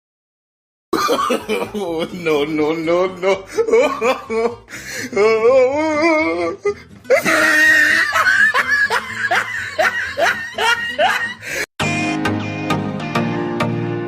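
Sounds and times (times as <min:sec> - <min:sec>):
loud laughter: 0:01.0 - 0:04.7, 0:07.1 - 0:11.7.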